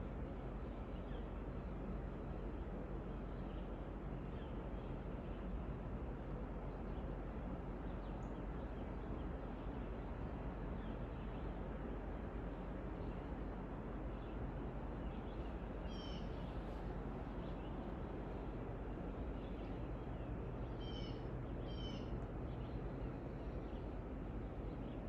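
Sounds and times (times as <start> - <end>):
steady background hiss: 0.0 - 25.0
short bird calls: 15.9 - 16.4, 20.8 - 22.1.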